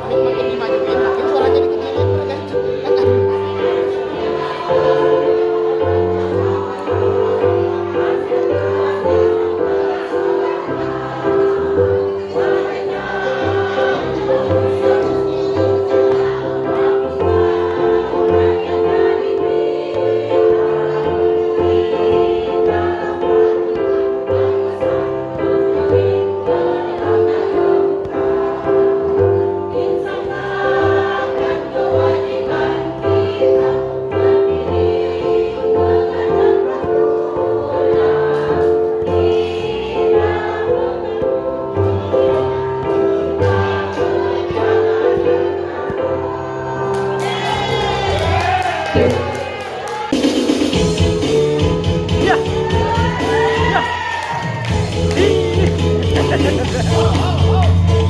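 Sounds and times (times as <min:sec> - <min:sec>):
choir singing in parts: 0:00.0 - 0:58.0
musical accompaniment: 0:00.0 - 0:58.0.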